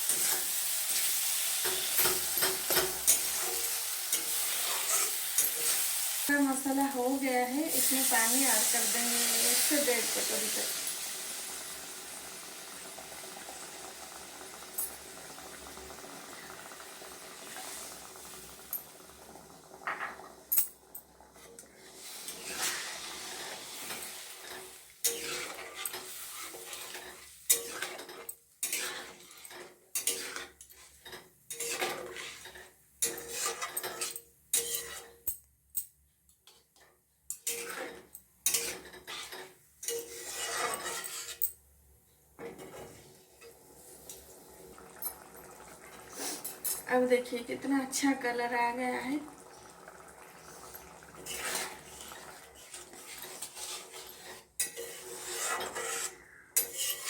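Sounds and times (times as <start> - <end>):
spoon scraping and knocking pan: 0.0 - 6.0, 21.3 - 35.2, 36.4 - 41.5, 42.4 - 44.3, 50.6 - 57.0
masala sizzling in a pan: 0.0 - 35.2, 37.3 - 57.0.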